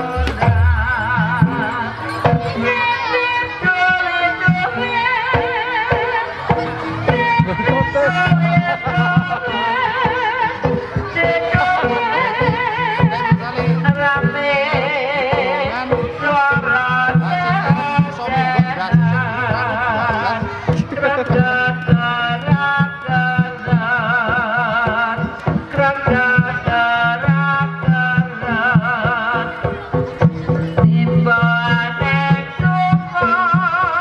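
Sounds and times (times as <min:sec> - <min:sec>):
hand drumming: 0:00.0 - 0:03.2
melody with strong vibrato: 0:00.0 - 0:04.8.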